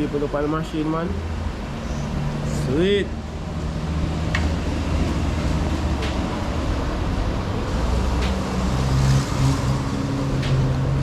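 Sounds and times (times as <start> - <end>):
road traffic noise: 0.0 - 11.0
vehicle engine idling: 1.2 - 11.0.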